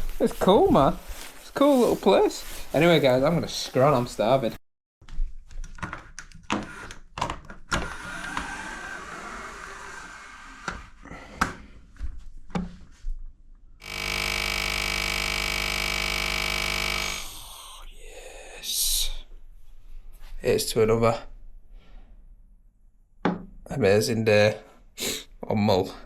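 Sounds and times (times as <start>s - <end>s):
small electric motor humming: 13.8s - 17.3s.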